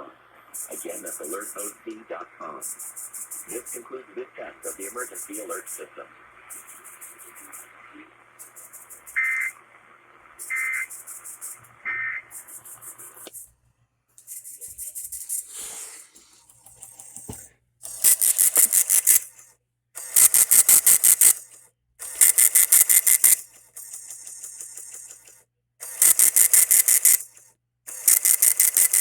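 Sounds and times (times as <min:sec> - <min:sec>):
rapid pulses: 0:00.0 - 0:13.6, 0:16.5 - 0:29.0
raspy digital chirps: 0:02.6 - 0:07.7, 0:08.4 - 0:09.6, 0:10.4 - 0:13.2.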